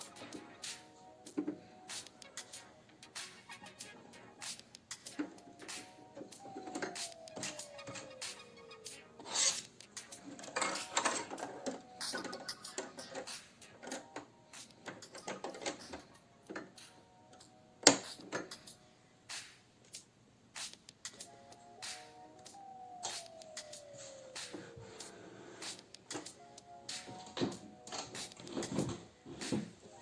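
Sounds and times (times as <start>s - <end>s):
faint background music: 0.0s - 30.0s.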